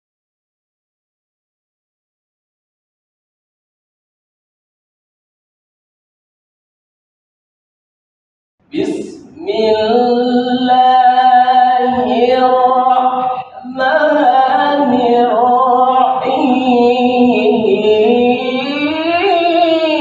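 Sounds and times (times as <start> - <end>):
man chanting recitation: 8.7 - 20.0.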